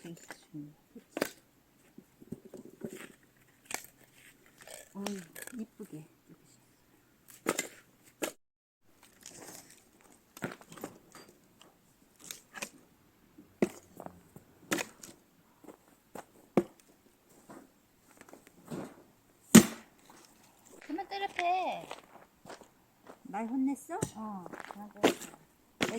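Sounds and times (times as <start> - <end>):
wood cracking: 9.0 - 12.8, 19.5 - 20.9
axe chopping wood: 13.6 - 14.1, 14.7 - 15.2, 19.5 - 20.0.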